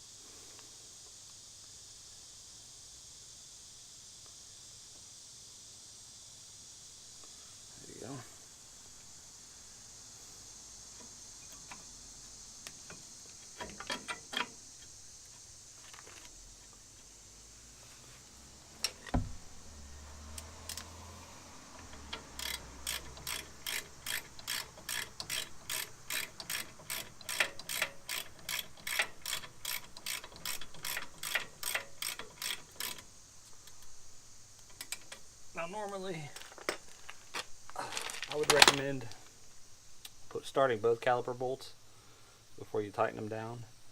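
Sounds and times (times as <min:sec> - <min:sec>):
socket ratchet clicking: 0:22.0 - 0:33.0.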